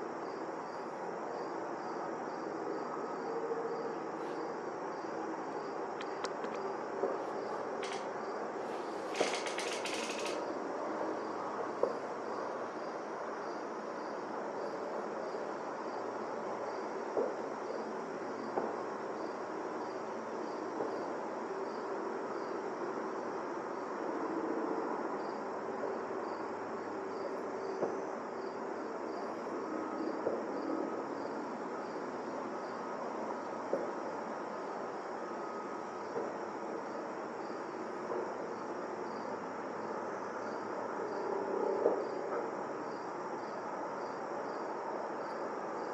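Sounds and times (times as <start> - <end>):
steady outdoor hum: 0.0 - 45.9
insects chirping: 0.2 - 17.0, 26.2 - 45.9.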